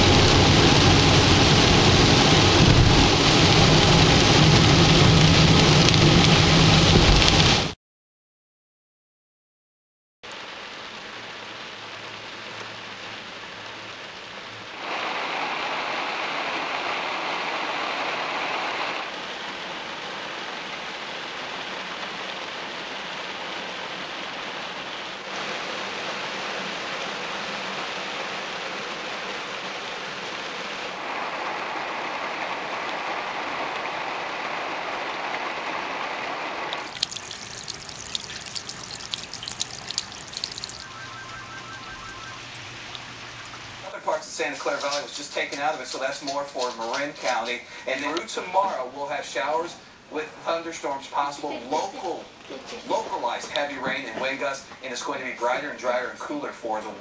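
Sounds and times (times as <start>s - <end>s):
heavy rain falling: 0.0s - 7.8s, 10.3s - 56.2s
water dripping: 36.8s - 43.8s
water trickling: 36.8s - 43.8s.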